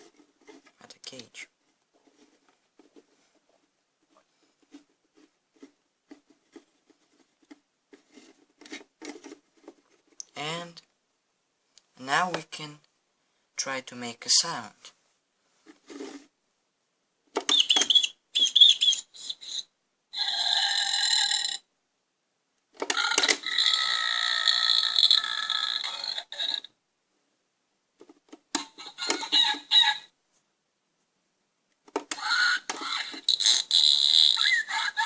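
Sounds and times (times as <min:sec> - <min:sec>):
toy sound effects from speaker: 0:17.4 - 0:21.6, 0:22.9 - 0:26.7, 0:28.6 - 0:30.1, 0:32.1 - 0:35.0.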